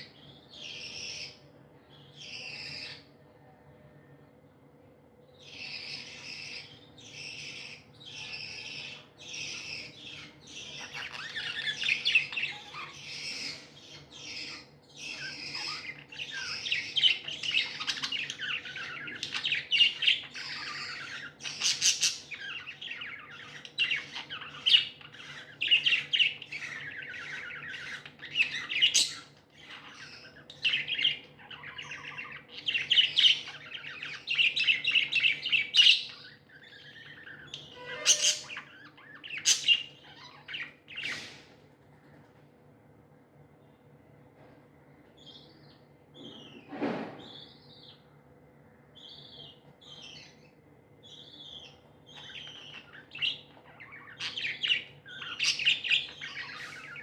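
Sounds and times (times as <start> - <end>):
budgerigars chirping and chattering: 0.0 - 3.1, 5.4 - 41.5, 49.0 - 57.0
loud bird squawks: 5.8 - 41.5.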